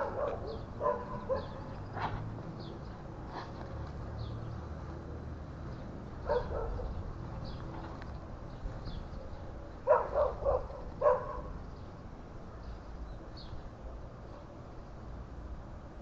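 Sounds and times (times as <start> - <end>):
dog barking: 0.0 - 1.7, 6.2 - 7.0, 9.8 - 11.6.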